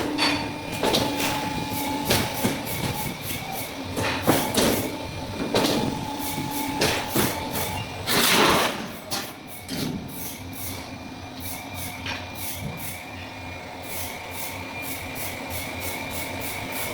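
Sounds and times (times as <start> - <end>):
machine clunks: 0.0 - 10.2
machinery hum: 0.0 - 16.9.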